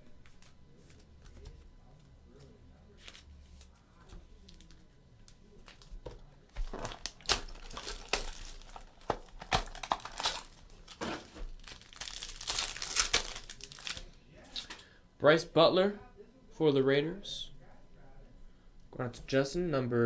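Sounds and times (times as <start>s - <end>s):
wrapper tearing and crinkling: 6.5s - 14.8s.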